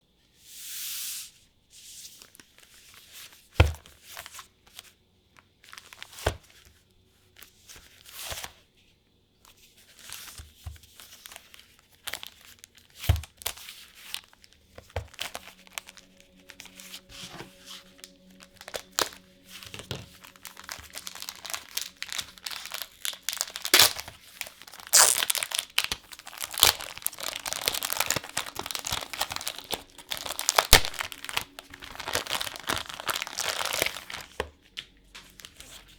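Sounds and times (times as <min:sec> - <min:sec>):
plastic wrapper crinkling: 0:10.9 - 0:35.9.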